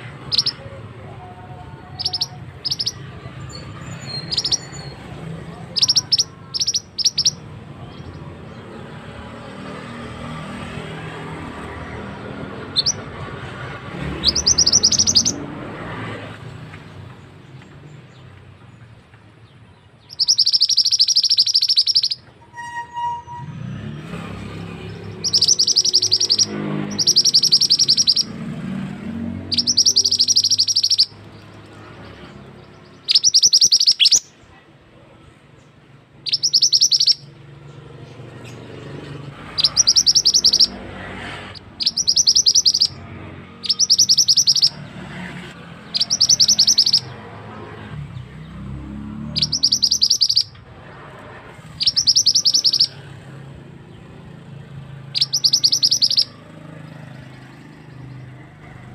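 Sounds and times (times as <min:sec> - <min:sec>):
bird chattering trills: 0:00.0 - 0:09.0, 0:12.5 - 0:15.5, 0:20.0 - 0:22.3, 0:24.9 - 0:34.4, 0:36.2 - 0:37.5, 0:38.1 - 0:45.0, 0:45.8 - 0:47.3, 0:49.3 - 0:50.6, 0:51.6 - 0:56.4.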